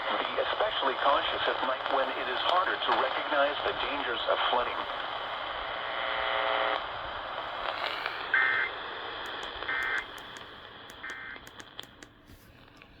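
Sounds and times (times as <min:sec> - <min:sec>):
radio hiss: 0:00.0 - 0:12.0
faint clicks: 0:09.2 - 0:12.9.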